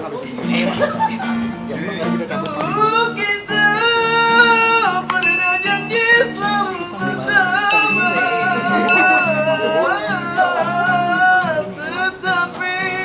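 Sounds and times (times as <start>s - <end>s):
acoustic guitar: 0.0s - 13.0s
person singing: 3.8s - 13.0s.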